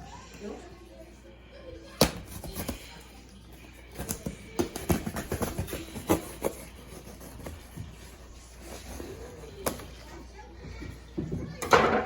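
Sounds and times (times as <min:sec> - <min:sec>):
cardboard rustling: 0:02.0 - 0:03.0, 0:03.7 - 0:10.1
cardboard package clicks and scrapes: 0:03.9 - 0:09.9.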